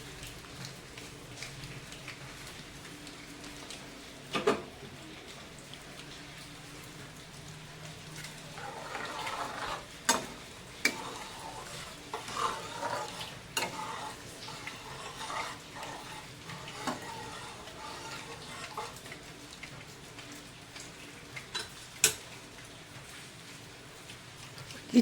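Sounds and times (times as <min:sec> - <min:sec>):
food sizzling in a pot: 0:00.0 - 0:25.0
spatula stirring: 0:08.2 - 0:19.5.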